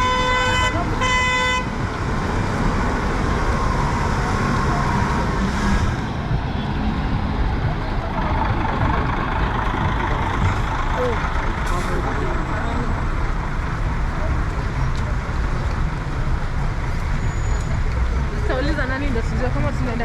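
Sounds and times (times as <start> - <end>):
car horn honking: 0.0 - 1.8
city street traffic: 0.0 - 20.0.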